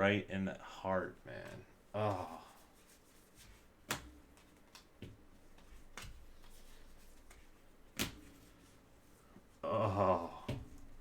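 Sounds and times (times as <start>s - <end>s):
cards clicking and tapping on table: 3.8s - 6.6s.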